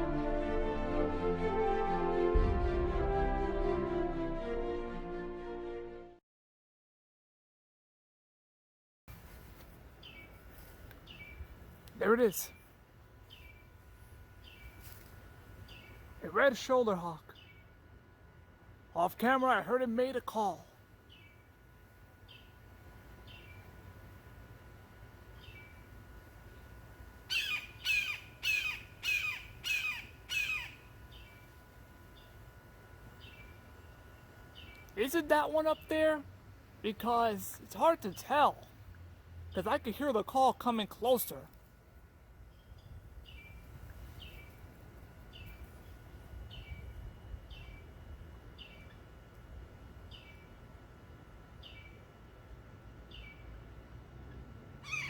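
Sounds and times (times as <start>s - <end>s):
low wind rumble: 0.0s - 5.0s, 42.0s - 51.8s
bird calling: 27.3s - 31.5s.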